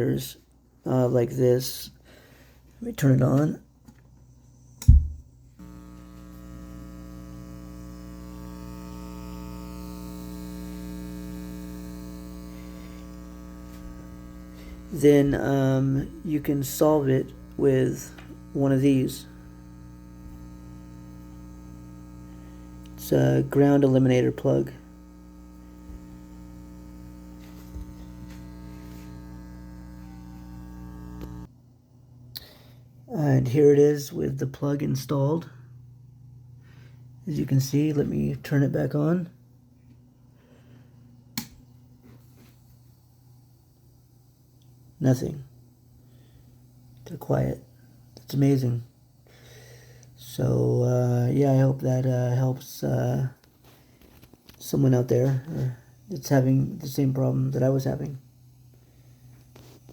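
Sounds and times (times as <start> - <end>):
mains hum from speakers: 0.0 - 59.9
studio monitors powering on thump: 4.8 - 31.5.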